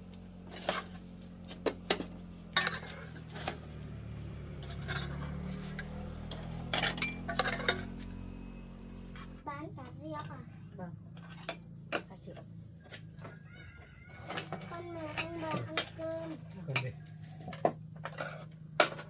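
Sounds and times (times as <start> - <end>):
bowls and utensils clinking: 1.8 - 3.6, 4.6 - 9.3.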